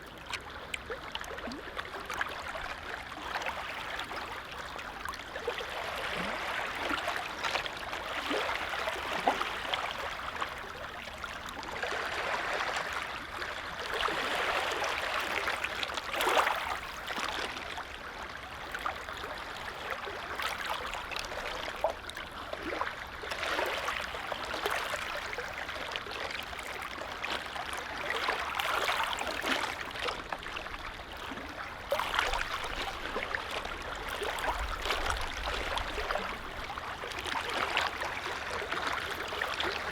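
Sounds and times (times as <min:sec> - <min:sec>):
lake waves lapping: 0:00.0 - 0:39.9
little water splashes: 0:18.6 - 0:39.9.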